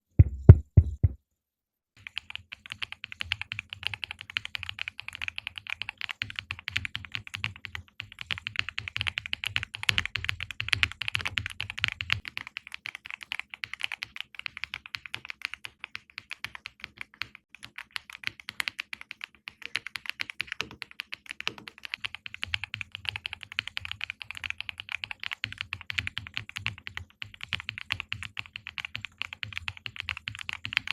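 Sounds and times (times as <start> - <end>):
heavy low thumps: 0.2 - 1.2
mechanical keyboard typing: 2.0 - 30.9.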